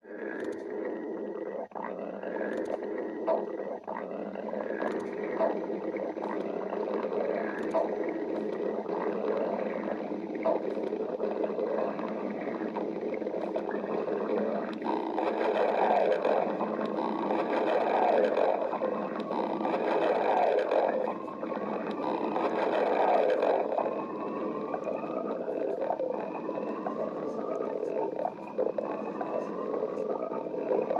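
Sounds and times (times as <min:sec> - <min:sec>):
stomach gurgling and rumbling: 0:00.0 - 0:30.9
small pops and clicks: 0:00.3 - 0:00.7, 0:02.4 - 0:04.0, 0:04.7 - 0:05.6, 0:06.2 - 0:09.7.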